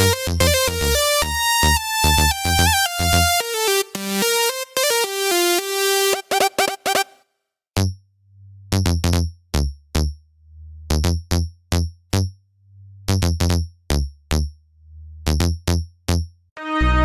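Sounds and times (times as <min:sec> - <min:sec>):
synthesizer plucked notes riff: 0:00.0 - 0:07.2, 0:16.6 - 0:17.0
deep sustained bass note: 0:16.6 - 0:17.0.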